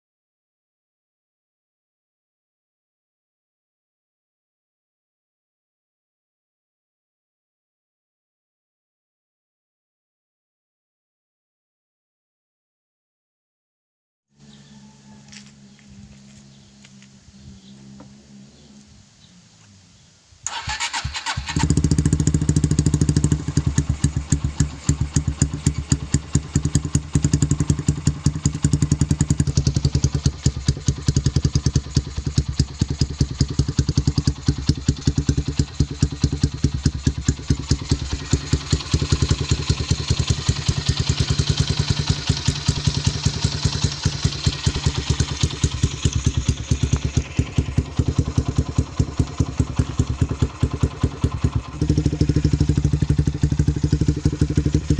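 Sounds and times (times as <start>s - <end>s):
motorcycle engine starting and running: 14.4s - 19.8s, 20.4s - 54.9s.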